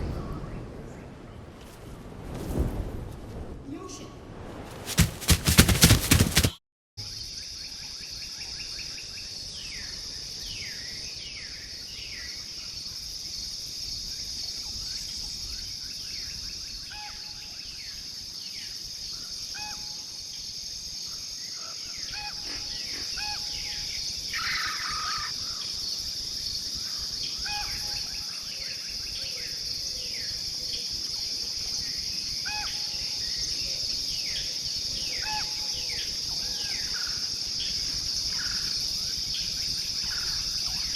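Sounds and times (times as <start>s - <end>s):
insects droning: 4.7s - 6.6s, 28.0s - 40.9s.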